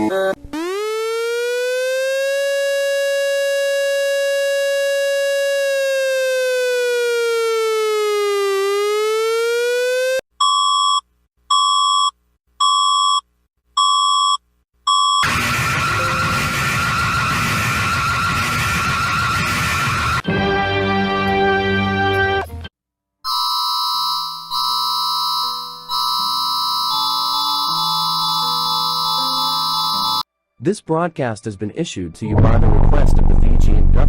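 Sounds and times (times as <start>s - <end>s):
electronic siren wail: 0.5s - 10.2s, 15.2s - 20.2s, 23.3s - 30.2s.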